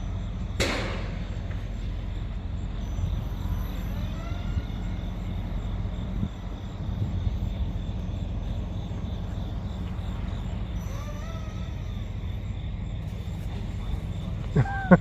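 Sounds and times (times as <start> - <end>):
model plane motor whine: 2.8 - 14.6.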